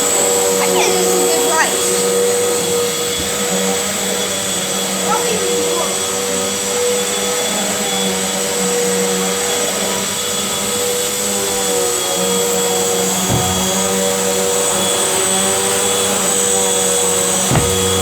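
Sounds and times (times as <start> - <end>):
low bump: 13.2 - 14.2, 17.4 - 18.0.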